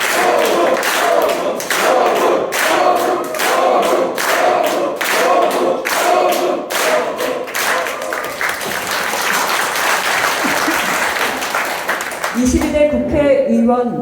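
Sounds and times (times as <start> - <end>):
crowd chanting in unison: 0.0 - 8.5
crowd cheering: 0.0 - 12.5
crowd clapping: 0.0 - 12.9.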